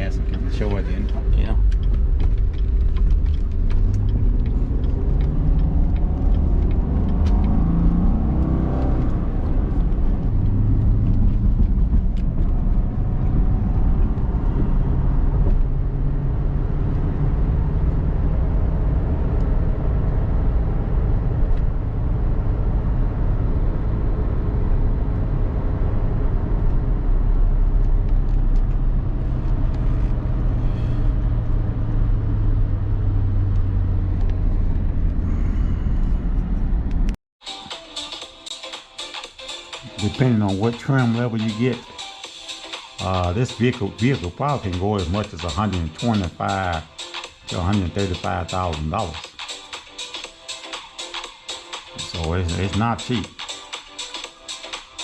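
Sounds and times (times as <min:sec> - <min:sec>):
car engine running: 0:00.0 - 0:37.2.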